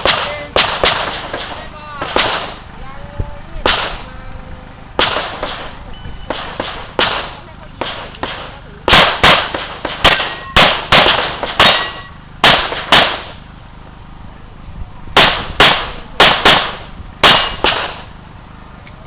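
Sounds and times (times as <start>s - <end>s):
pistol shots with echo: 0.0s - 2.6s, 3.6s - 4.0s, 5.0s - 13.4s, 15.2s - 18.1s.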